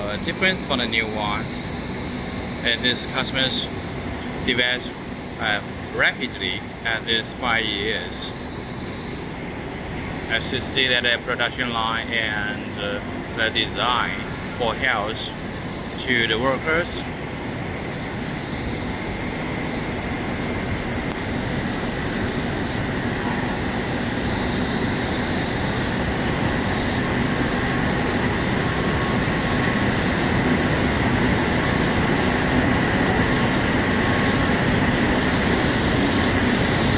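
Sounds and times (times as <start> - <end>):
faint machine whines: 0.0 - 36.9
production line machinery running: 0.0 - 36.9.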